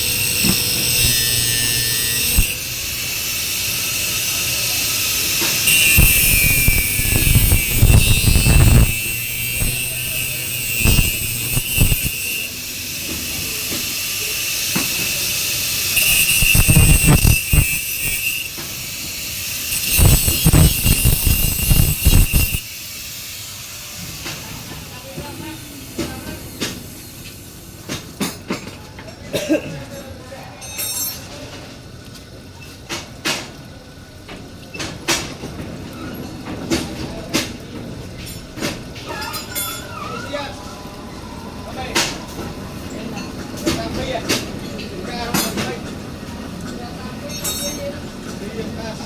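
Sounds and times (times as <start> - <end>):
metalworking machine whining: 0.0 - 28.6, 38.2 - 49.0.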